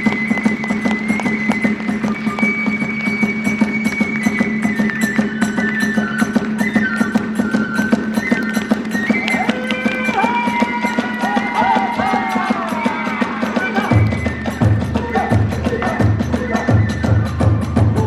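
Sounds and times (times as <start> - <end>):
flute playing held notes: 0.0 - 18.0
drum beat: 8.4 - 18.0.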